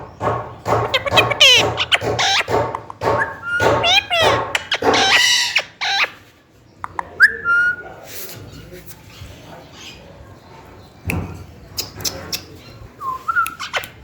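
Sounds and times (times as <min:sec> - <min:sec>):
parrot chattering and squawking: 0:00.6 - 0:06.3, 0:11.7 - 0:14.0.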